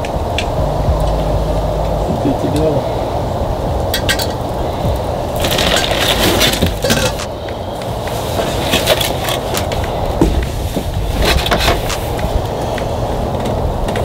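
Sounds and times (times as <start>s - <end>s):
low rushing noise: 0.0s - 14.0s.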